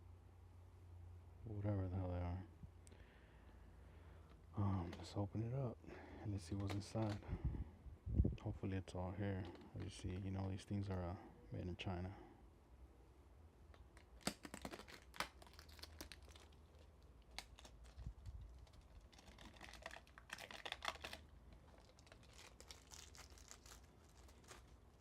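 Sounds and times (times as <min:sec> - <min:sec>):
packaging crinkling and tearing: 0:06.3 - 0:07.3, 0:09.3 - 0:10.6, 0:13.8 - 0:25.0
packaging clicks and snaps: 0:06.4 - 0:07.3, 0:09.4 - 0:10.4, 0:13.7 - 0:25.0.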